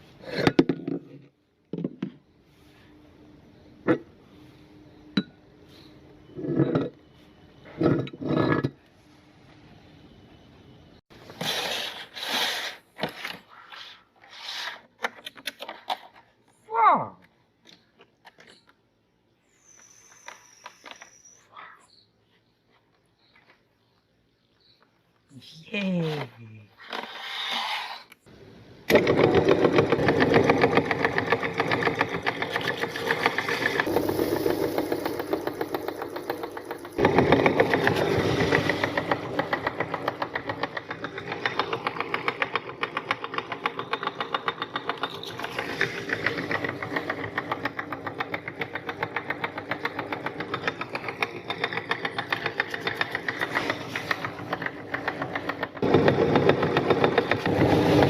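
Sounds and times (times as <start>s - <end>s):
meat grinder running: 28.9s - 58.0s.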